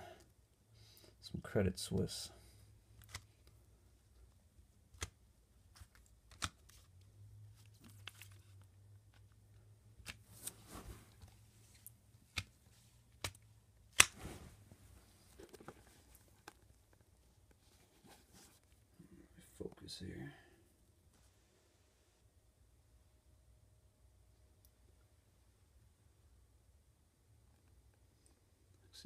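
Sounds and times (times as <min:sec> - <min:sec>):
packaging clicks and taps: 0:05.8 - 0:06.9, 0:13.2 - 0:13.4.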